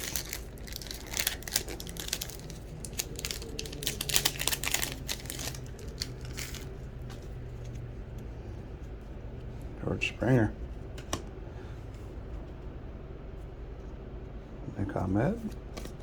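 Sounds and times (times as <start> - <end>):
foil wrapper crinkling and tearing: 0.0 - 7.3.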